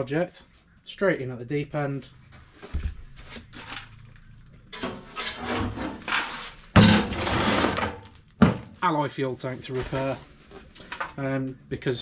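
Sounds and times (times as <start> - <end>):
knocks and scraping of metal tank: 4.7 - 8.7.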